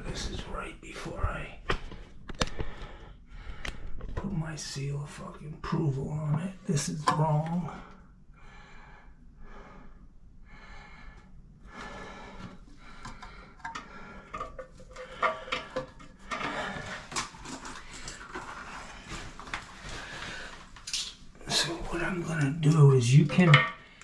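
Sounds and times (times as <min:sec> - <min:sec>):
man breathing heavily: 0:01.8 - 0:04.1, 0:07.8 - 0:17.2.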